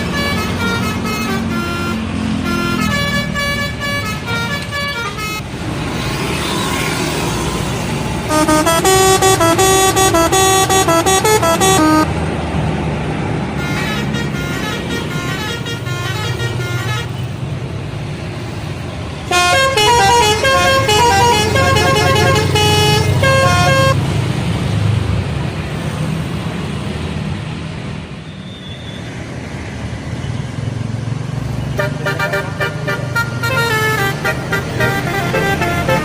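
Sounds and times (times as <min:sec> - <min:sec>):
bus horn playing melody: 0:00.0 - 0:05.5, 0:08.3 - 0:12.2, 0:13.6 - 0:17.4, 0:19.3 - 0:24.0, 0:31.8 - 0:36.0
bus engines rumbling: 0:00.0 - 0:36.0.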